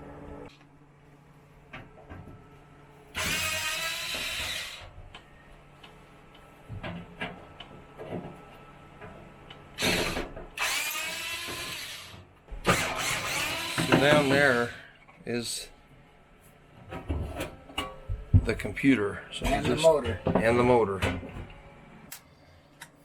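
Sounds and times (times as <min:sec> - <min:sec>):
power drill running: 0:03.2 - 0:04.9, 0:09.8 - 0:14.8.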